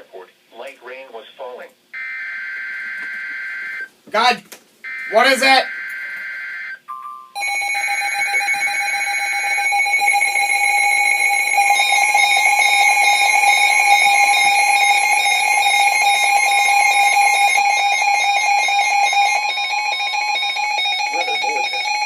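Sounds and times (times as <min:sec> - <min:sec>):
two-tone attention signal: 0:17.7 - 0:22.0.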